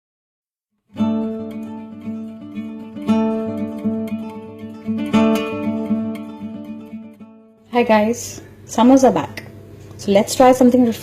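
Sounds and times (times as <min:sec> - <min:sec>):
acoustic guitar strumming chords: 0:00.9 - 0:07.7.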